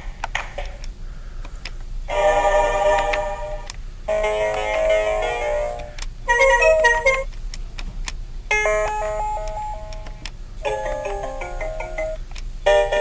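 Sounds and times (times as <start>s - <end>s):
electronic phone ringtones: 6.3s - 7.3s.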